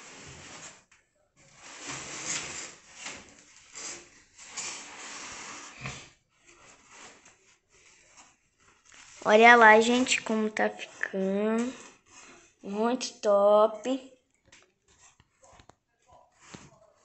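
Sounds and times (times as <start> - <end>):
cardboard boxes scraping and rustling: 0.0 - 0.9, 1.5 - 10.0.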